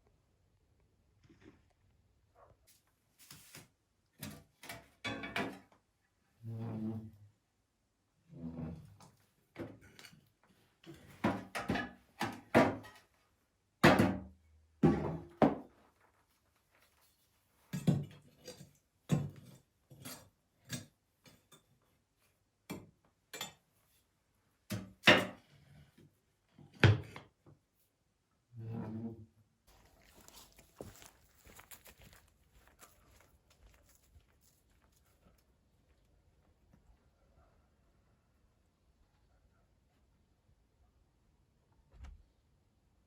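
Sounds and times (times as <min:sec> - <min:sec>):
objects knocking and clattering: 0:04.2 - 0:05.8, 0:10.8 - 0:13.1, 0:13.8 - 0:15.8, 0:17.6 - 0:21.7.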